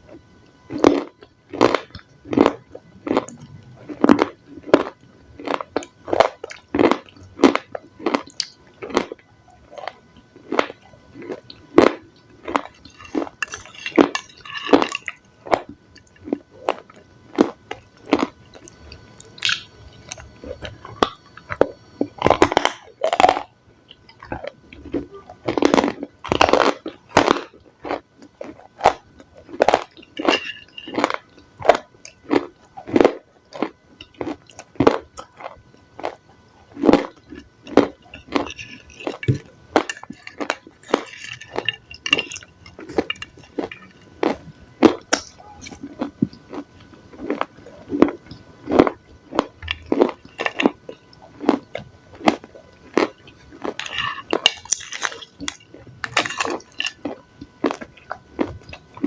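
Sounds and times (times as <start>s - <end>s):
crunching raw salad: 0.7s - 23.5s, 24.1s - 59.0s.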